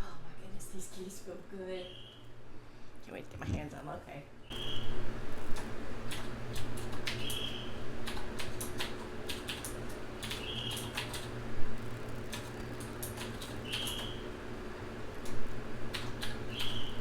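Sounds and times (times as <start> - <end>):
steady low hum: 0.0 - 17.0
mechanical keyboard keystrokes: 8.0 - 11.3.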